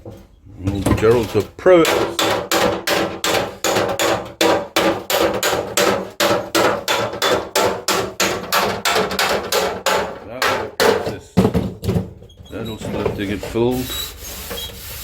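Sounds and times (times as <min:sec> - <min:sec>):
hammer beating metal: 0:01.8 - 0:11.2.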